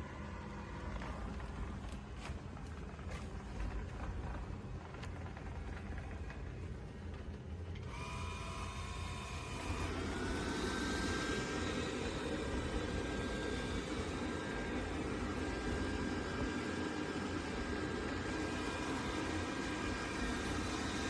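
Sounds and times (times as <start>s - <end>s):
robot vacuum motor whining: 7.8s - 21.0s.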